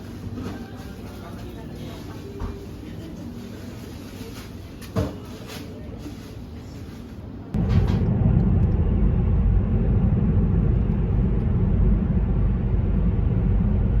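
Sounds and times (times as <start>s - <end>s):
steady low rumbling: 7.2s - 14.0s.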